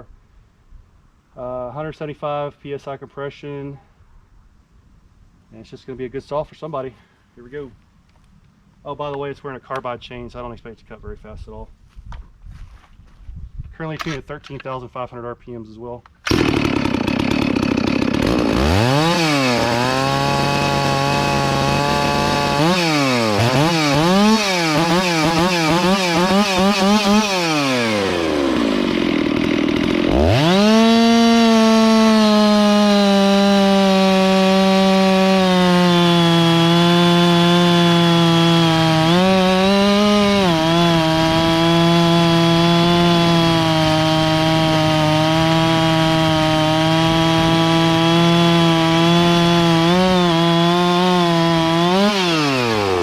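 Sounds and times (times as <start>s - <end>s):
chainsaw cutting into wood: 16.2s - 53.0s
chainsaw revving: 16.3s - 53.0s.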